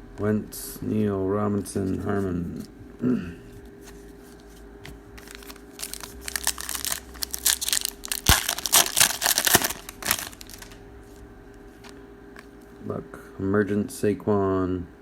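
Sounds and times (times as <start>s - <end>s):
foil wrapper tearing and crinkling: 5.2s - 10.8s.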